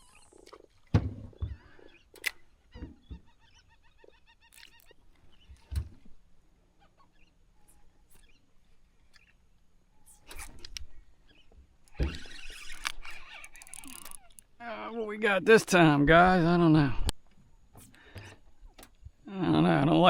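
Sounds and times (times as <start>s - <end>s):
seabirds calling: 0.0s - 16.8s.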